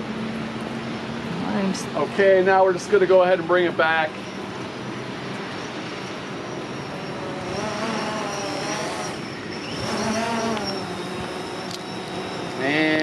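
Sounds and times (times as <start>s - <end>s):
drone propellers whining: 4.2s - 13.0s.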